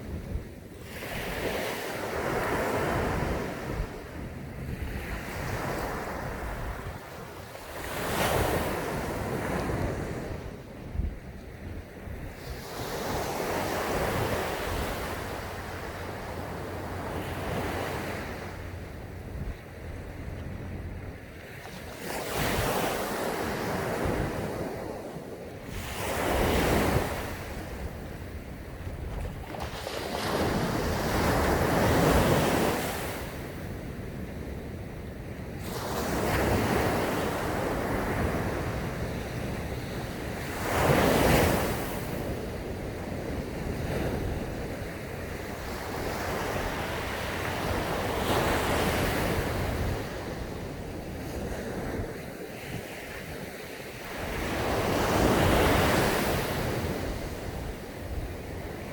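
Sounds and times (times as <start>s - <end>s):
wind rumble on microphone: 0.0s - 58.9s
sea waves breaking on sand: 28.8s - 33.6s.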